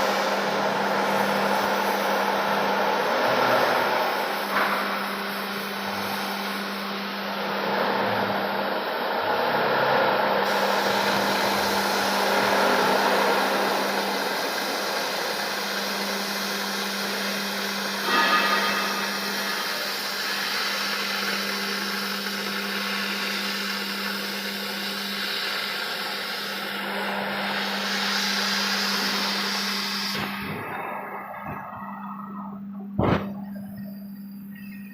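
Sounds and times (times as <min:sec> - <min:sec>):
machine whirring: 0:10.3 - 0:34.9.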